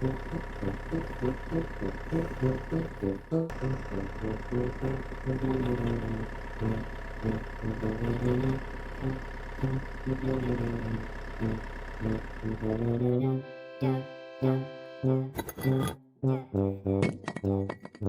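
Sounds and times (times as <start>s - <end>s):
small motor whining: 0.0s - 13.6s.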